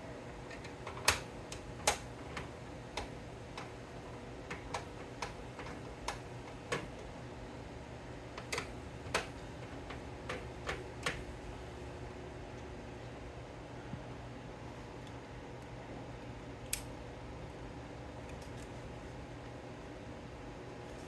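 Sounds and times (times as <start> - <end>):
computer parts clicking and tapping: 4.4 - 7.0, 8.4 - 11.2.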